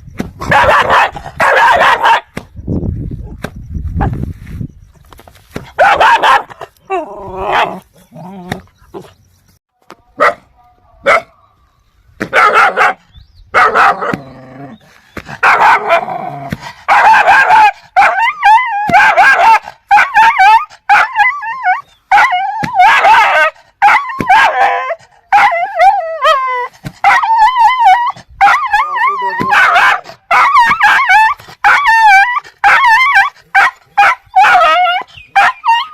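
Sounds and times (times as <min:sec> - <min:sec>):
dogs barking aggressively: 0:00.4 - 0:02.4, 0:05.6 - 0:06.8, 0:07.4 - 0:09.1, 0:10.2 - 0:10.4, 0:12.2 - 0:35.9
dogs yelping and whining: 0:05.8 - 0:09.2, 0:16.9 - 0:35.9.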